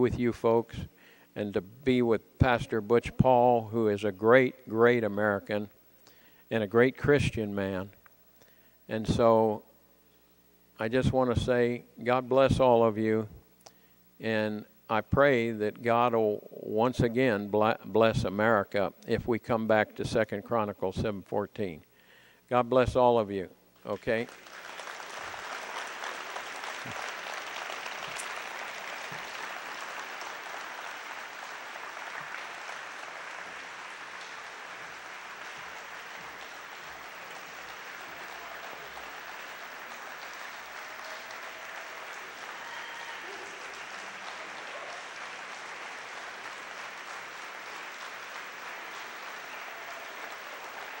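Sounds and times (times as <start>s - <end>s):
audience applauding: 24.1s - 51.0s.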